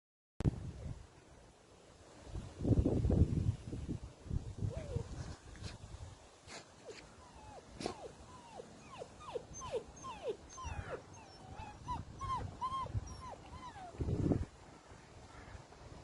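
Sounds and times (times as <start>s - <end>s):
dog whining: 6.8s - 14.0s.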